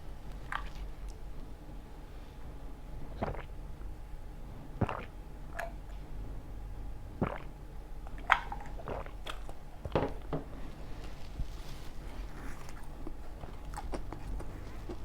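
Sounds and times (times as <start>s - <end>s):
person chewing food: 0.3s - 1.2s, 10.9s - 15.0s.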